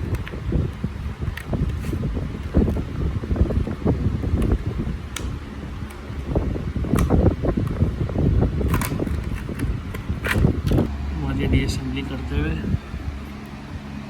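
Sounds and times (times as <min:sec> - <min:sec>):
plastic laptop parts clicking: 0:00.0 - 0:02.9, 0:04.3 - 0:06.3, 0:06.9 - 0:07.9, 0:08.6 - 0:10.9
low rumbling handling noise: 0:00.0 - 0:14.0.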